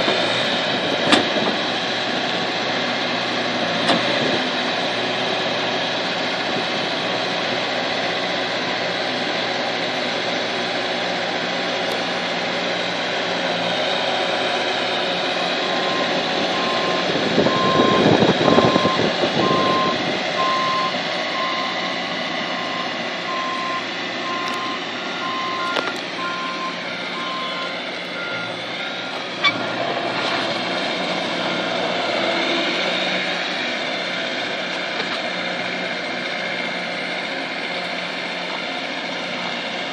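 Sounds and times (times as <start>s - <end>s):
skid steer engine running: 0.0s - 39.9s
backup alarm beeping: 15.8s - 21.8s, 22.6s - 29.2s.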